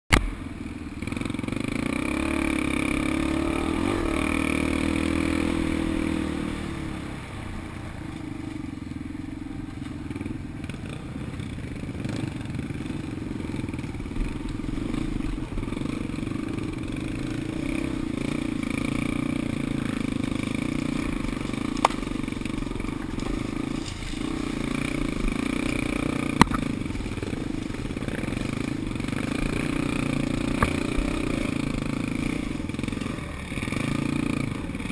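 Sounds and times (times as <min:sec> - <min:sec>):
vehicle engine running: 0:00.1 - 0:34.9
sharp knocks: 0:26.4 - 0:26.7.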